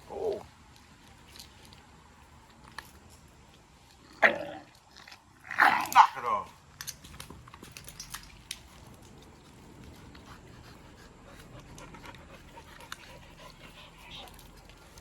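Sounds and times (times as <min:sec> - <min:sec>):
dog panting: 0:08.6 - 0:15.0.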